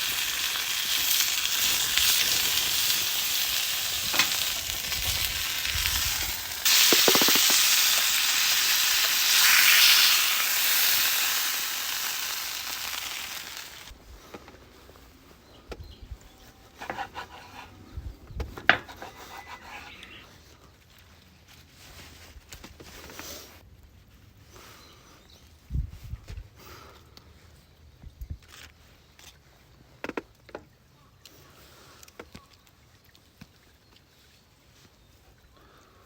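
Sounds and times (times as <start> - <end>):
steak sizzling in a pan: 0.0 - 13.9.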